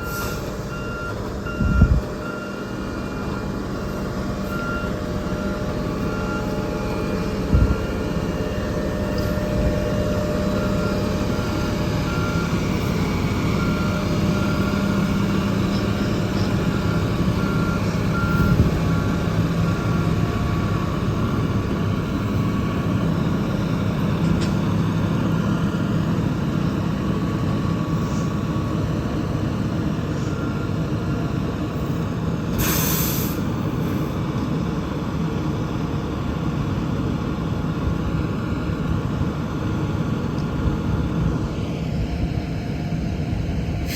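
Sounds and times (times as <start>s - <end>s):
loud hiss of air: 0.0s - 0.6s, 32.5s - 34.1s
reversing alarm beeping: 0.0s - 34.1s
diesel engine running: 0.0s - 43.9s.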